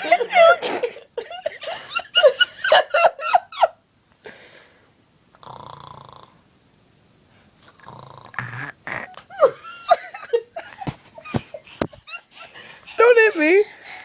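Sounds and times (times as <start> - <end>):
child pretend snoring: 5.4 - 6.4, 7.7 - 9.3.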